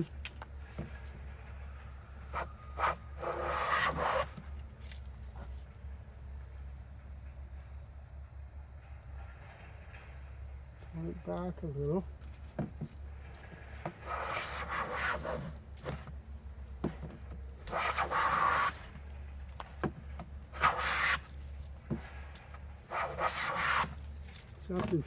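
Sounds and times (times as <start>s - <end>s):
hand plane rasping on wood: 2.8s - 4.4s, 13.9s - 16.1s, 17.6s - 18.9s, 20.6s - 21.3s, 22.9s - 24.0s.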